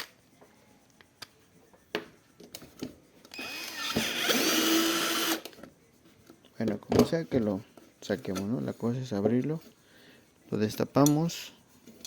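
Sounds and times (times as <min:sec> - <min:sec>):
small electric motor running: 0:03.4 - 0:05.4.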